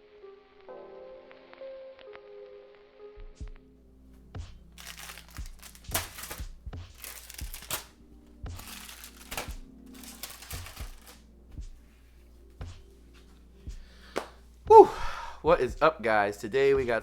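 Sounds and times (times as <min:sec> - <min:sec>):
plastic packaging crinkling: 0:04.8 - 0:11.2.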